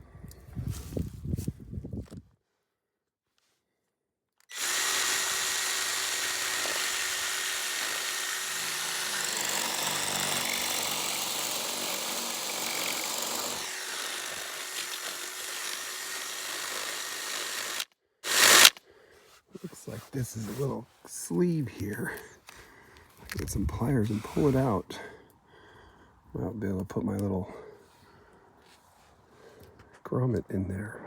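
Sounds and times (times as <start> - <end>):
electric drill boring: 4.5 - 18.8.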